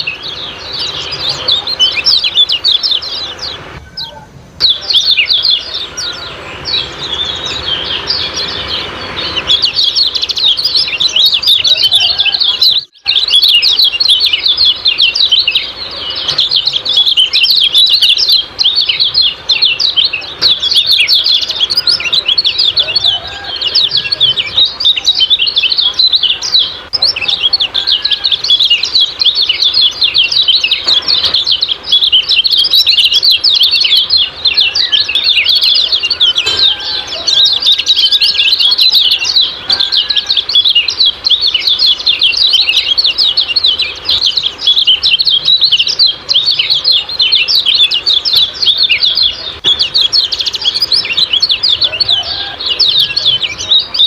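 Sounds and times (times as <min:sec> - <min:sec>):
bird chattering high chirps: 0:00.0 - 0:54.0.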